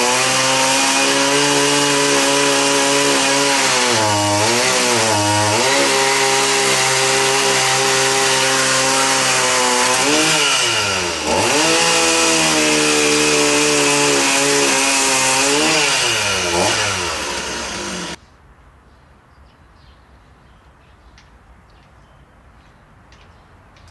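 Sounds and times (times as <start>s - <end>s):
chainsaw cutting wood: 0.0s - 18.2s.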